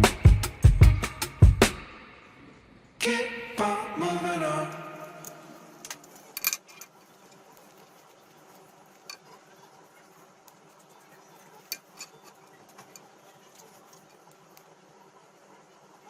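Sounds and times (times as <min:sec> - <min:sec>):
small metal parts clinking: 0:06.0 - 0:07.4, 0:11.6 - 0:13.2.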